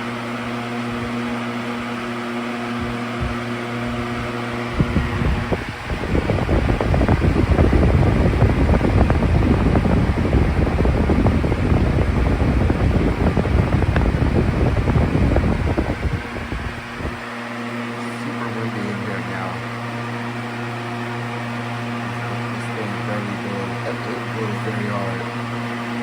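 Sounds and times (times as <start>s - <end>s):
fan hum: 0.0s - 26.0s
wind buffeting microphone: 2.6s - 17.4s.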